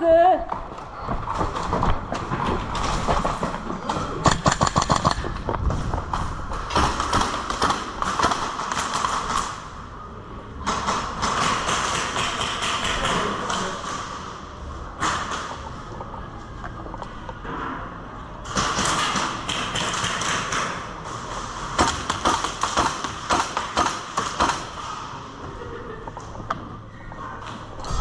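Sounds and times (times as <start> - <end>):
airsoft guns firing: 4.2 - 5.3, 6.7 - 9.7, 10.6 - 14.3, 18.4 - 25.0.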